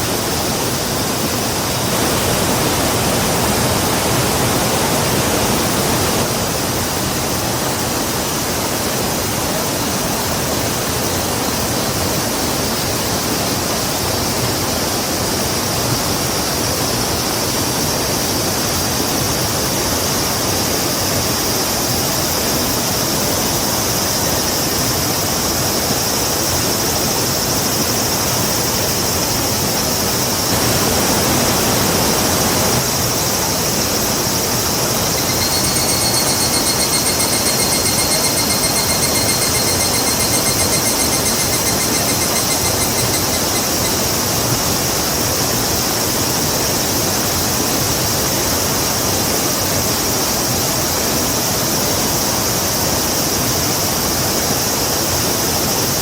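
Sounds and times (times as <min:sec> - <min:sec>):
rushing river water: 0:00.0 - 0:22.1, 0:27.9 - 0:35.2
high-pitched hum: 0:34.5 - 0:44.5.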